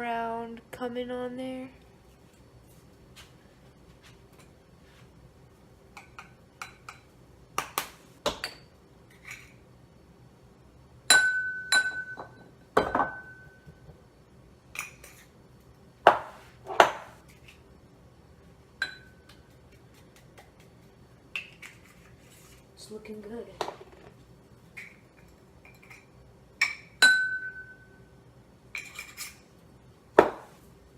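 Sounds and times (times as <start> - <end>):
spice being shaken: 19.3 - 22.7.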